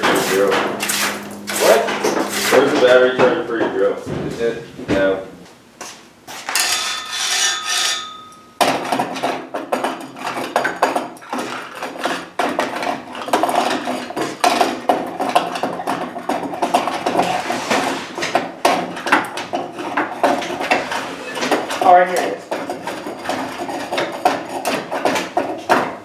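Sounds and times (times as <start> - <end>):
rapid clattering and knocking: 8.6 - 26.0.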